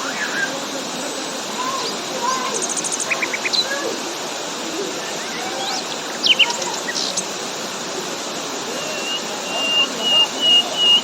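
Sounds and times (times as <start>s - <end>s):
waterfall rushing: 0.0s - 11.0s
high bird chirps: 5.1s - 7.3s, 8.8s - 11.0s.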